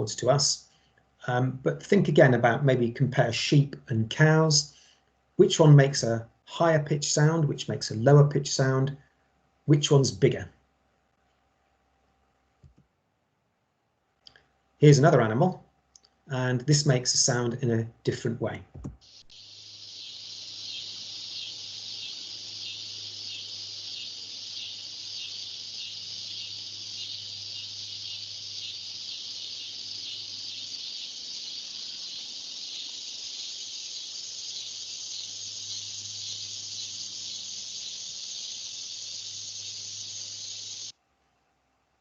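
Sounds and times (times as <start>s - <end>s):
insect buzzing trill: 19.0s - 40.9s.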